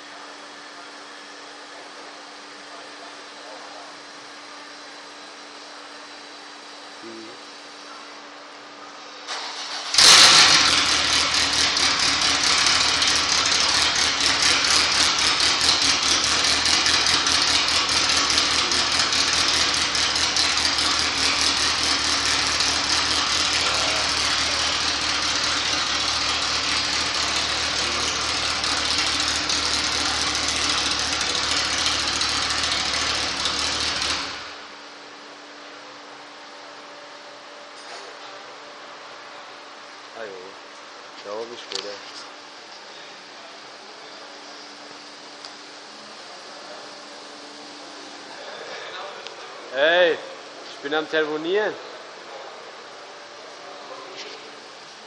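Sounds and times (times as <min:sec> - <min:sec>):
car engine starting and idling: 0:09.2 - 0:35.4
raspy exhaust: 0:09.7 - 0:35.2.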